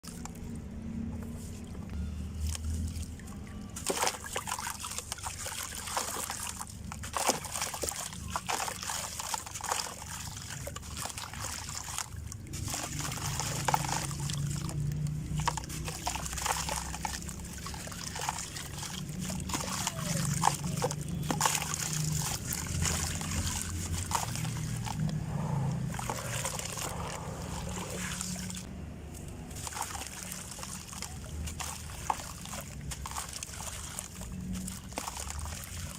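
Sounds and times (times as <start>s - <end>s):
grains trickling: 7.9s - 28.7s, 29.4s - 35.9s.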